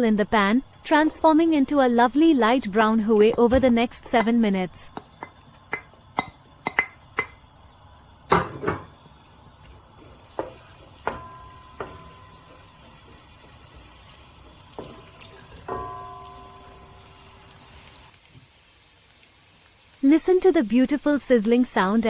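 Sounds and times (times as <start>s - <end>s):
utensils tapping on cookware: 3.1s - 7.4s, 8.3s - 9.0s, 10.0s - 16.8s.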